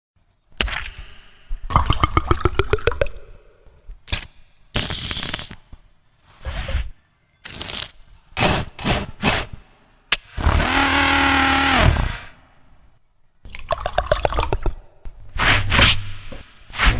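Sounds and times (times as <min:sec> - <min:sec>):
loud buzzing mouth tone: 0:10.4 - 0:12.3.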